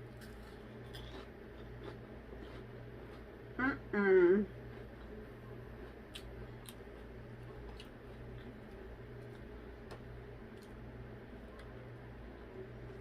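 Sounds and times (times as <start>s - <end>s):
steady low hum: 0.0s - 13.0s
person chewing: 0.1s - 3.3s, 4.7s - 9.6s.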